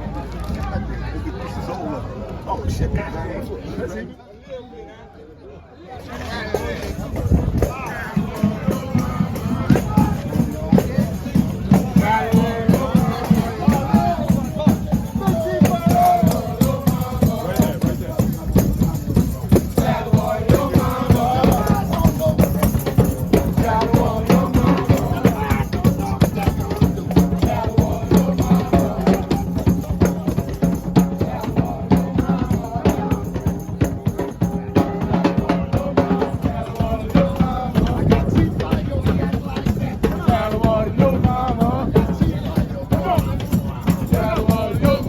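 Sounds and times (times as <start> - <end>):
voices chanting: 5.8 - 45.0
tambourines rattles and hand drums: 6.5 - 45.0.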